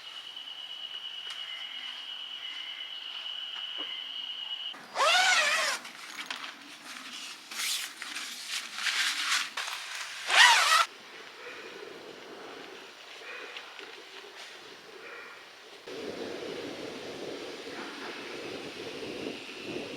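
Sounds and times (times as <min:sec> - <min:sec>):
zipper rasping: 0:05.0 - 0:06.0, 0:10.2 - 0:10.9.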